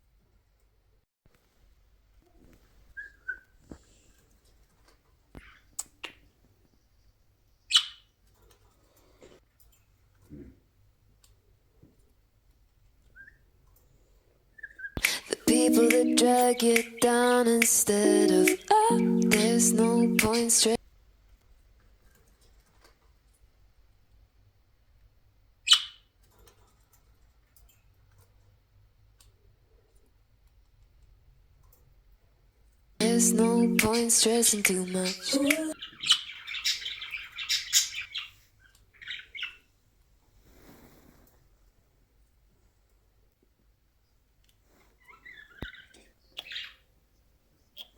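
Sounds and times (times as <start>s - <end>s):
budgerigar chirp: 7.7s - 8.0s, 25.7s - 26.0s, 35.8s - 38.4s, 45.1s - 46.8s
sharp clicks: 15.0s - 19.6s
faint clicks and scratches: 21.4s - 23.5s, 26.2s - 32.9s.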